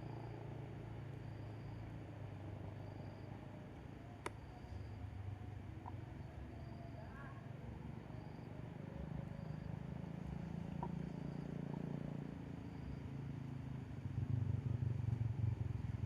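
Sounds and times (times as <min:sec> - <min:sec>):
engine pulsing rumble: 0:00.0 - 0:16.0.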